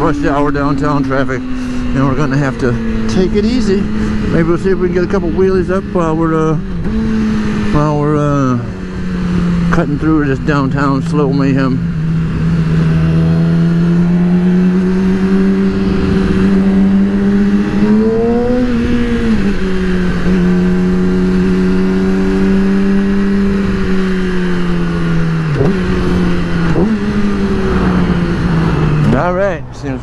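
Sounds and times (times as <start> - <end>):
motorcycle engine running: 0.0 - 29.6
wind rushing: 11.8 - 20.2.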